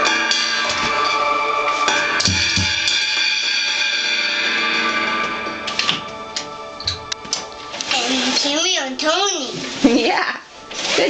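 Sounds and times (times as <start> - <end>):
drum kit hits: 0.0 - 7.4
recorded song playing: 0.0 - 11.0
bass drum thumps: 2.2 - 2.9.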